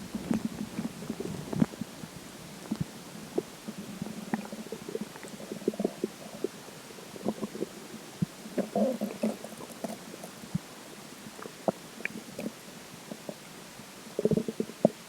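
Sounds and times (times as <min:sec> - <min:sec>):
stomach gurgling: 0:00.0 - 0:15.0.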